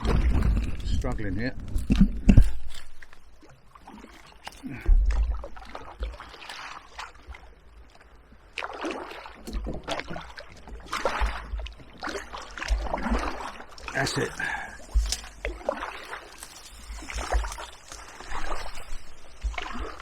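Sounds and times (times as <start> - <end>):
kayak paddle splashing: 0.0 - 20.0.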